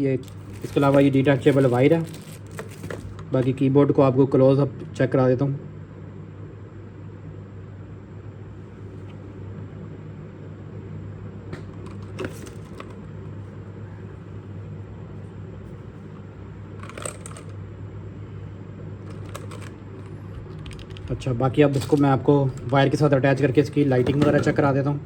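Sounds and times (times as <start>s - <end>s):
keyboard clicks and rustles: 0.0s - 3.6s, 11.6s - 13.1s, 16.1s - 17.6s, 19.0s - 24.7s
low background hum: 0.0s - 25.0s.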